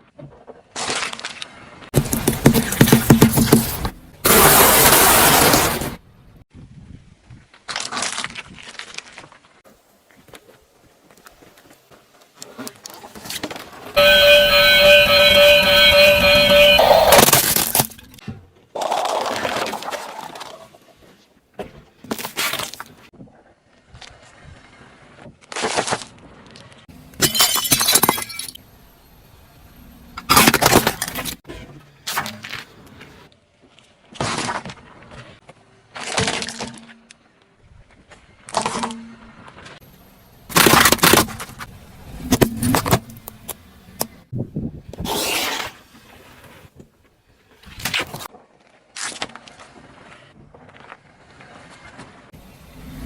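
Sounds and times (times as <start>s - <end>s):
tyres crushing objects: 2.0s - 6.0s, 40.5s - 44.2s.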